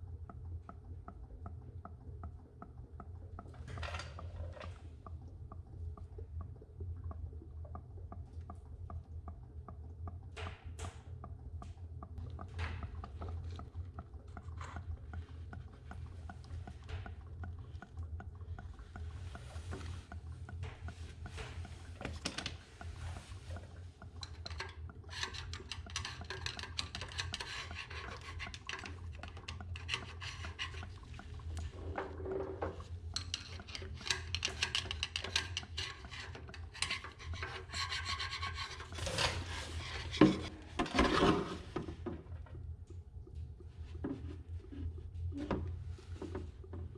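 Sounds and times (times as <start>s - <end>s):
steady low hum: 0.0s - 46.9s
hand scraping and rubbing metal: 24.4s - 31.3s, 32.4s - 41.8s.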